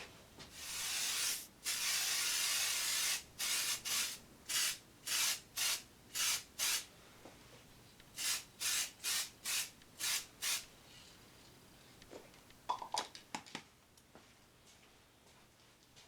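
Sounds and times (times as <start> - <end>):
spray paint can hissing: 0.6 - 6.9, 8.2 - 10.6.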